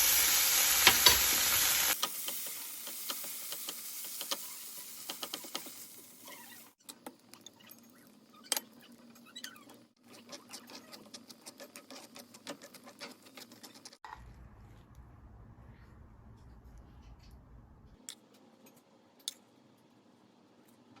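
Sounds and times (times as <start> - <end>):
food sizzling in a frying pan: 0.0 - 6.8.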